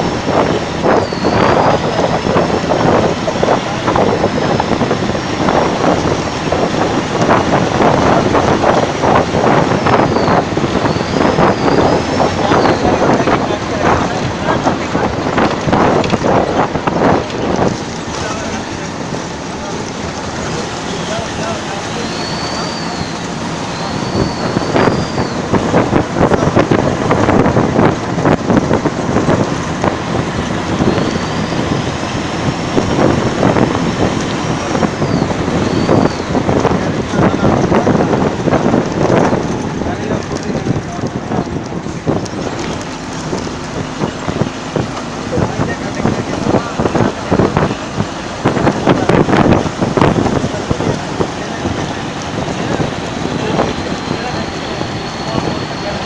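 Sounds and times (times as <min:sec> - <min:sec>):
diesel bus engine running: 0:00.0 - 0:56.0
road din: 0:00.0 - 0:56.0
wind noise: 0:00.0 - 0:56.0
turbocharger whistle: 0:00.8 - 0:02.1, 0:09.7 - 0:13.2, 0:20.9 - 0:25.8, 0:30.8 - 0:31.9, 0:34.8 - 0:36.5, 0:53.5 - 0:56.0.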